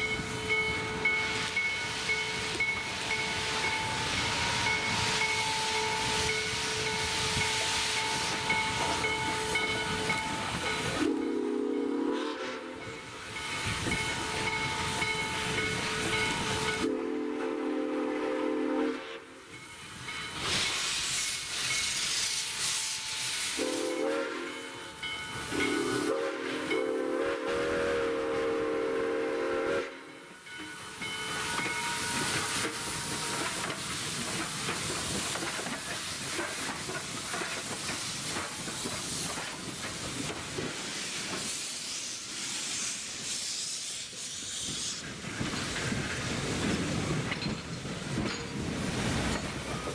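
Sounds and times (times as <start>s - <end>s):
steam locomotive chime whistle: 0.0s - 34.2s
steam hissing: 0.0s - 49.9s.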